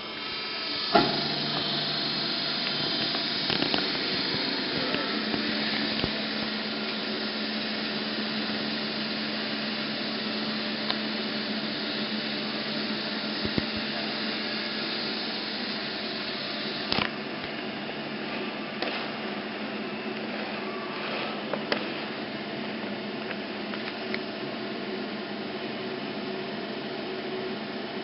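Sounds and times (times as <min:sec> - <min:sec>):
metal-cutting bandsaw humming: 0:00.0 - 0:17.0.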